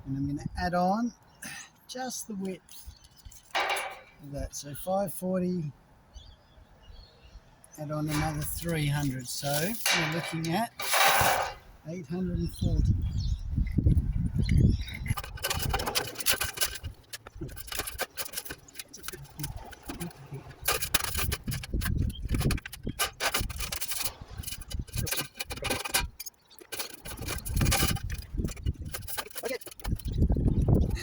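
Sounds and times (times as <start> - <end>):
steel sheet scraping and rattling: 3.3 - 4.2, 8.0 - 11.8, 14.8 - 31.0.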